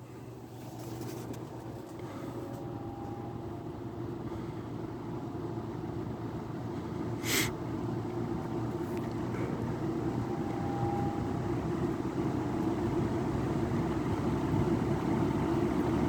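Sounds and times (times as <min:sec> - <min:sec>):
box fan motor hum: 0:00.0 - 0:16.0
brief hiss: 0:07.2 - 0:07.5.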